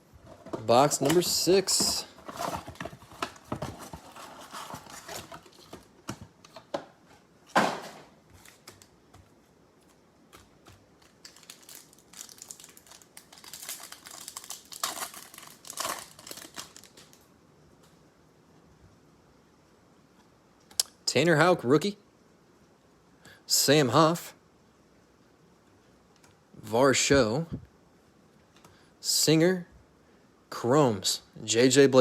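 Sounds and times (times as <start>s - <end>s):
packaging crinkling: 0.3s - 6.6s, 9.8s - 17.3s
packaging tearing: 11.0s - 17.2s.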